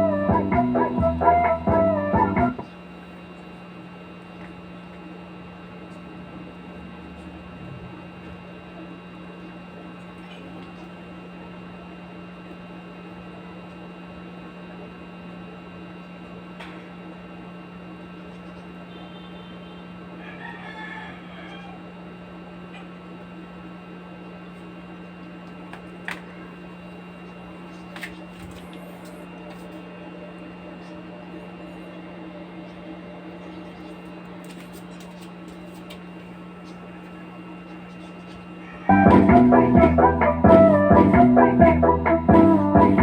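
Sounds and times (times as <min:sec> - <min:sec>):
steady low hum: 0:00.0 - 0:20.2, 0:21.9 - 0:43.0
rooster crowing: 0:20.1 - 0:22.0, 0:38.6 - 0:39.2.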